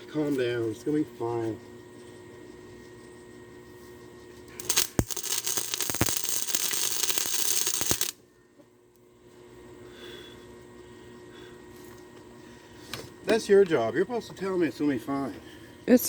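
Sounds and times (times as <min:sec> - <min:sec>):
welding arc crackling: 0:04.6 - 0:08.2.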